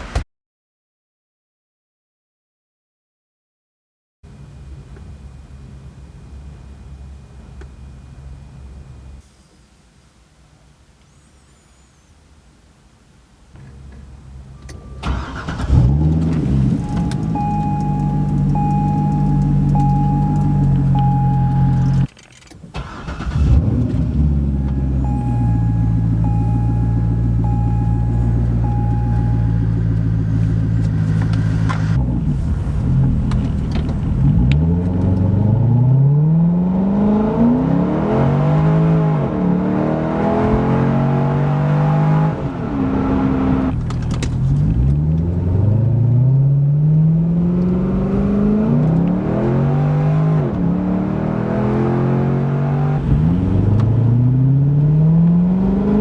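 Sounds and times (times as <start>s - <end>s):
car engine accelerating: 13.6s - 22.1s, 22.8s - 56.0s
chime beeping: 16.4s - 22.1s, 24.5s - 30.8s.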